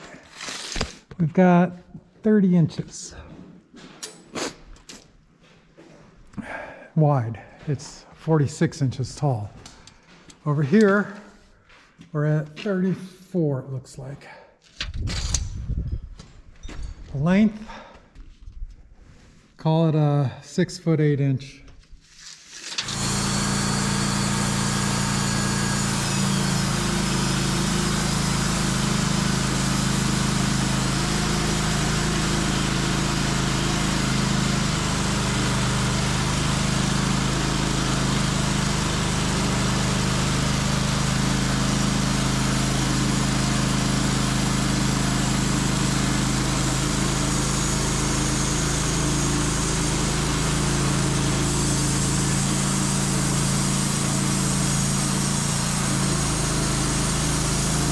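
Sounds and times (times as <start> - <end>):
sawmill engine running: 22.6 - 57.9.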